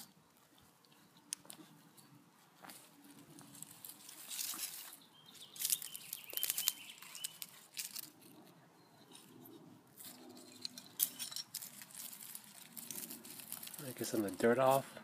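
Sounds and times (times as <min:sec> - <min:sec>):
dry soil crunching and scraping: 0:00.0 - 0:15.0
bird chirping: 0:04.6 - 0:07.6, 0:08.3 - 0:11.6.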